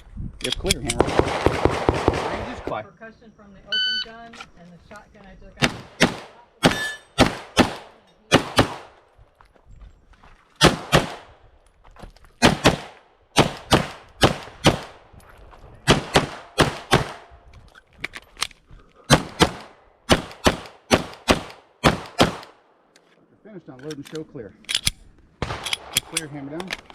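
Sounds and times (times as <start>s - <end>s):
pistol shots: 0.9s - 2.6s, 5.6s - 9.0s, 10.6s - 11.3s, 12.4s - 15.0s, 15.8s - 17.3s, 19.1s - 22.6s, 25.4s - 26.2s.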